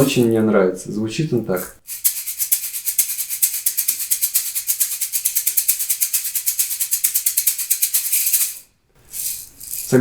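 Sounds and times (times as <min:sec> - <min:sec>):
shaker rattling in a groove: 0:01.4 - 0:10.0.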